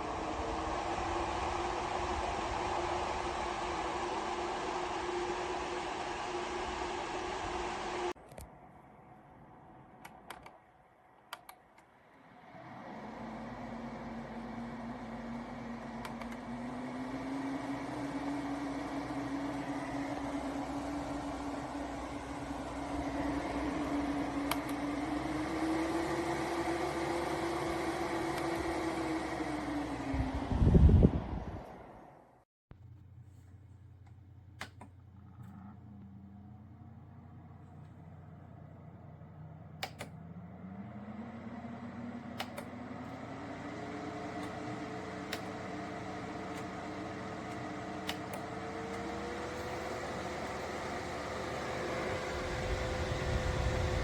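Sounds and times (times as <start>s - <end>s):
electric fan humming: 0.0s - 32.1s, 32.7s - 54.0s
sharp clicks: 39.8s - 40.2s, 42.4s - 42.7s.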